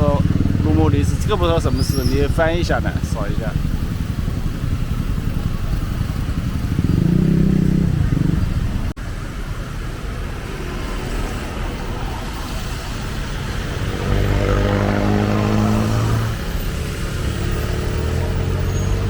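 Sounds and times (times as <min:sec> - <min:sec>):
road noise: 0:00.0 - 0:19.0
vehicle engine passing: 0:11.5 - 0:19.0.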